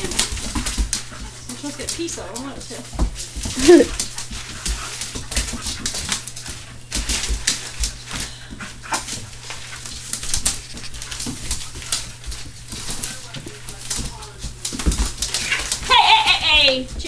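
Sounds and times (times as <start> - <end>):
claws and beak tapping: 0.0 - 17.0.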